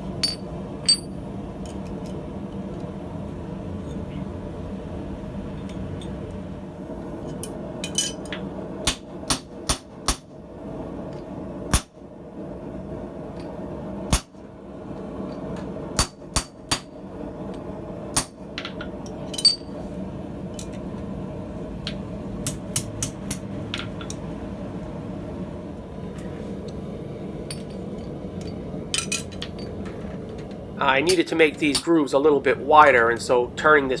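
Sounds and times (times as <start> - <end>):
steady background roar: 0.0 - 34.0
hammer striking steel on anvil: 7.9 - 10.3, 16.0 - 16.9, 31.1 - 31.9.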